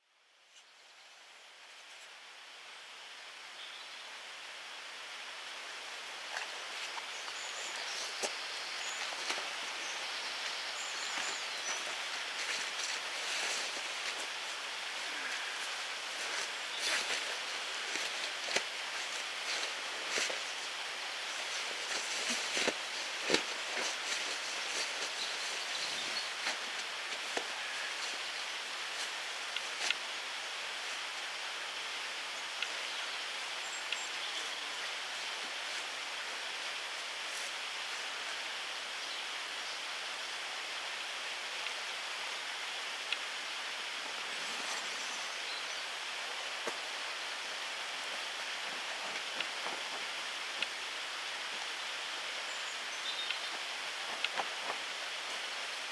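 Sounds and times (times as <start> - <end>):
steady hiss of leaves: 0.0 - 55.9
faint ticks: 49.1 - 50.8.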